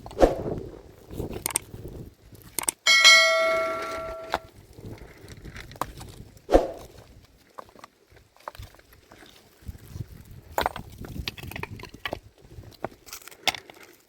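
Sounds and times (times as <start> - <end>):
metal tool clanging on stone: 2.9 - 4.4.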